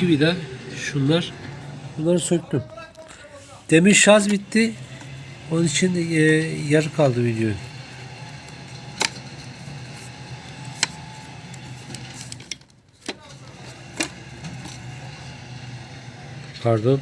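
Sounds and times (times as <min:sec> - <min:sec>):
plastic parts clicking and tapping: 0:08.4 - 0:09.3, 0:10.6 - 0:13.3.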